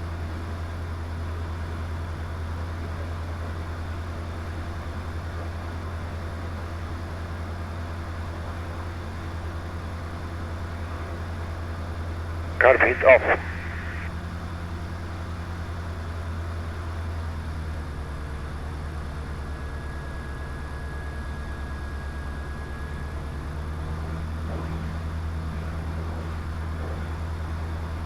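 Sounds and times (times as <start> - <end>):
aircraft engine drone: 12.6 - 14.1.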